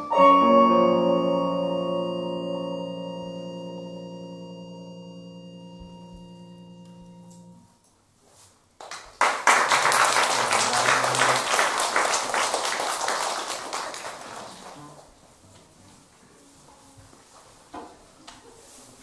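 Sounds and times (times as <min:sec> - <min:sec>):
ringing musical note: 0:00.0 - 0:07.8
audience applauding: 0:08.8 - 0:15.2.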